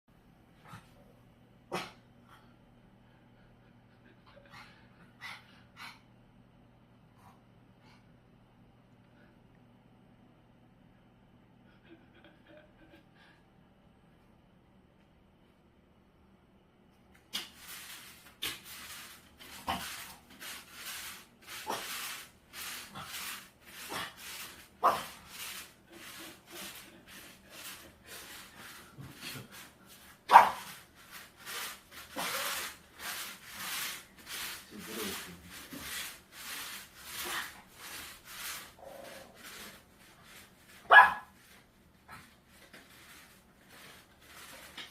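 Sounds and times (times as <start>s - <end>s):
dog barking: 30.3s - 30.7s, 40.9s - 41.3s.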